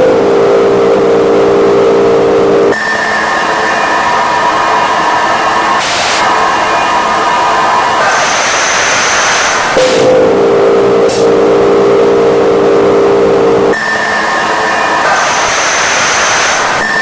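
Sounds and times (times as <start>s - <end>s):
steady droning tones: 0.0s - 17.0s
burst of hiss: 5.8s - 6.3s, 8.0s - 10.1s, 15.1s - 16.8s.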